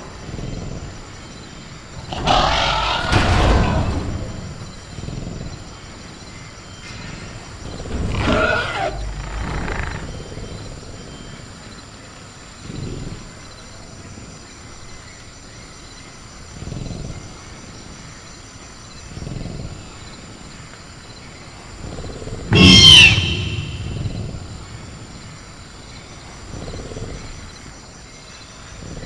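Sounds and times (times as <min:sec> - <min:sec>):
crickets chirping: 0:00.0 - 0:29.0
low creature growls: 0:02.0 - 0:05.6, 0:22.4 - 0:24.9
creature screeching growl: 0:02.1 - 0:04.1, 0:08.0 - 0:10.0, 0:22.5 - 0:24.6.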